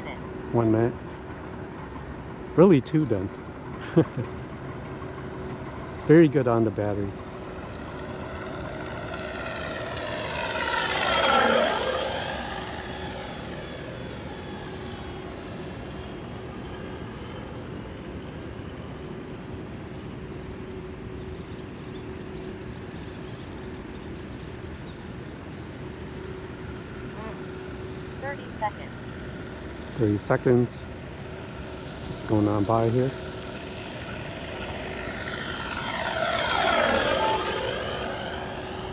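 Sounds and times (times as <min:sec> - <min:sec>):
simulated engine sound from speaker: 0:00.0 - 0:01.2, 0:05.0 - 0:17.2, 0:29.9 - 0:38.9
model plane propeller and motor drone: 0:00.0 - 0:38.9.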